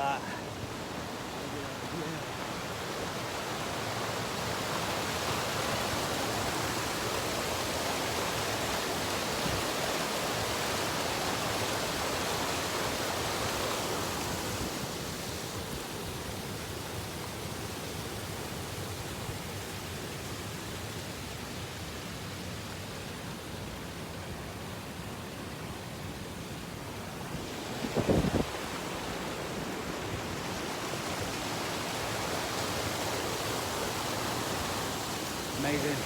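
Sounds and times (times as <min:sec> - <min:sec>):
waterfall and stream rushing: 0:00.0 - 0:36.0.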